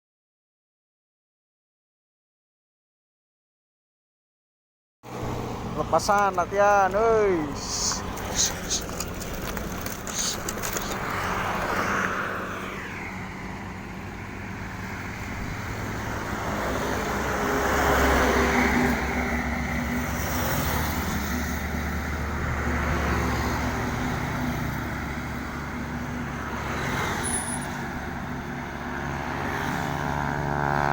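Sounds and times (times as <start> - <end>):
vehicle engines running: 5.1 - 30.9
vehicle passing close: 5.1 - 30.9.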